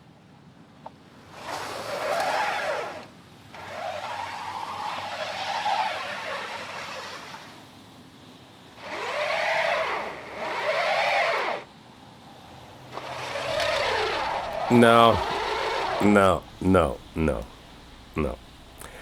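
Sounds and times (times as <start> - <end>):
tires spinning in snow: 1.1 - 19.0
car engine revving: 12.6 - 19.0.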